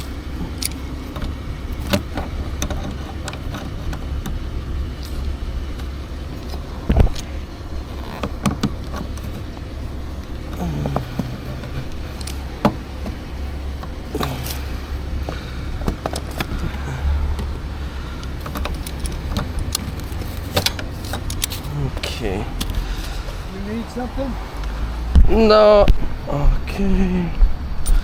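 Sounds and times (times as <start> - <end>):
metal hand tools clinking: 0.0 - 16.6, 18.1 - 23.1
steady low rumble: 0.0 - 28.0
heavy thump: 6.8 - 7.4.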